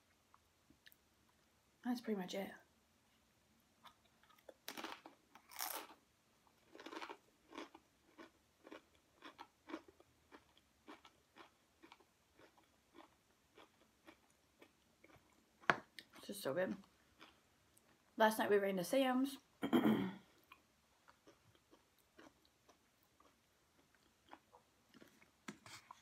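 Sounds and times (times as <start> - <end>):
chewing crunchy food: 3.8 - 6.0, 6.6 - 16.2, 16.8 - 18.0, 20.4 - 26.0.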